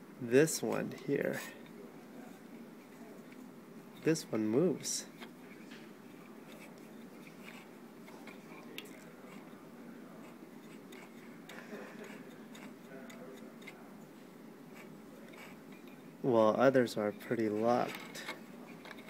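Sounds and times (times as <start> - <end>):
steady low hiss: 0.0 - 19.0
fingers rubbing metal connector: 12.0 - 13.8, 17.5 - 19.0.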